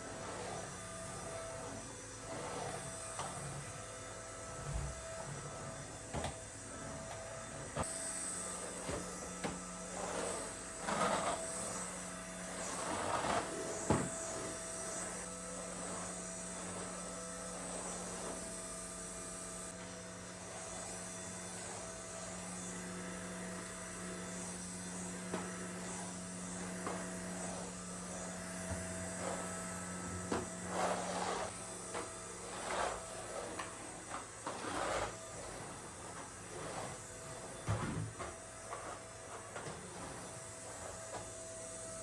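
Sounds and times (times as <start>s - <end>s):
electrical appliance hum: 0.0s - 42.0s
rustling and scraping: 4.5s - 18.6s, 25.2s - 41.6s.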